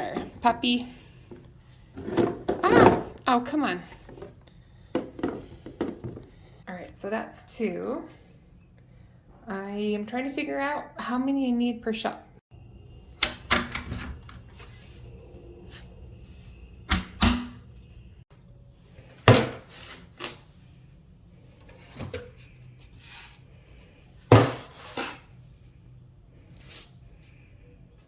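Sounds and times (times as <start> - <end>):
plastic bins clacking and knocking: 1.3 - 3.2, 3.9 - 6.4.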